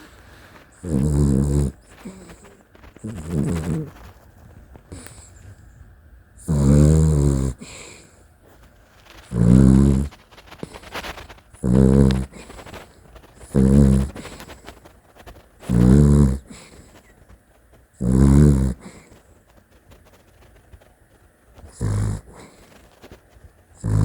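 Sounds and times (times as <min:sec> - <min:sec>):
dog snoring: 0:00.0 - 0:04.2, 0:04.8 - 0:05.5, 0:06.4 - 0:08.2, 0:09.0 - 0:14.9, 0:15.6 - 0:17.1, 0:18.0 - 0:19.2, 0:21.6 - 0:24.0
dog breathing softly: 0:00.0 - 0:05.8, 0:06.4 - 0:17.6, 0:18.6 - 0:24.0.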